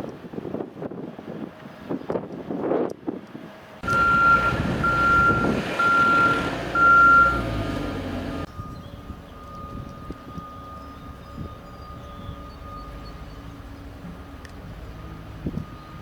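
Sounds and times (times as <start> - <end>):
diesel engine rumble: 3.5 - 16.0
backup alarm beeping: 3.8 - 13.6.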